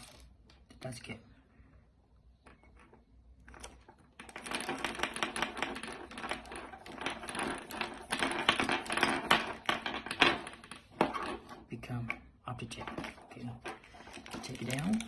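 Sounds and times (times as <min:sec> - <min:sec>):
plastic parts clicking and rattling: 0:12.8 - 0:15.0.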